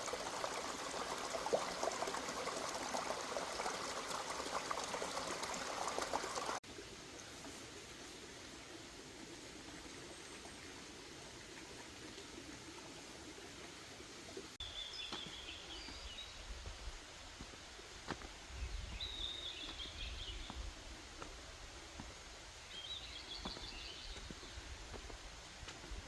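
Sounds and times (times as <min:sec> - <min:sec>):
steady outdoor hiss: 0:00.0 - 0:26.0.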